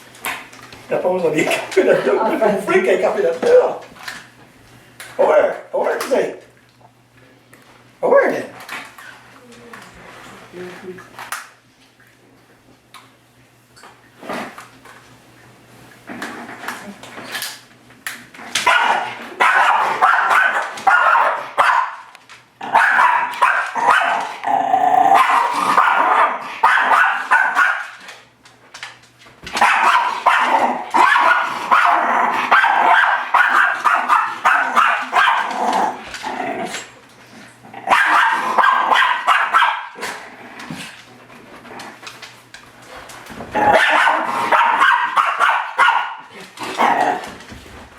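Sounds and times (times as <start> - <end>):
dog barking rapidly: 18.6 - 24.3, 25.1 - 28.0, 29.6 - 35.6, 37.9 - 40.0, 43.6 - 46.3
dog growling: 23.8 - 26.6, 30.4 - 33.0, 34.6 - 38.9, 46.3 - 47.4.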